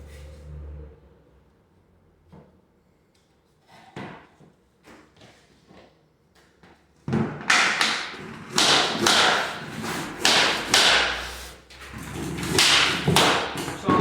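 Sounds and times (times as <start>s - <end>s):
hammer knocking on plastic block: 7.5s - 9.6s, 12.6s - 14.0s.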